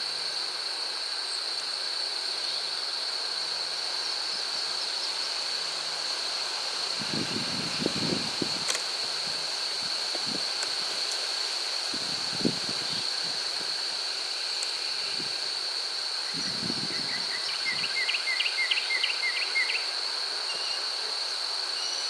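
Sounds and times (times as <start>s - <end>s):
high insect drone: 0.0s - 22.0s.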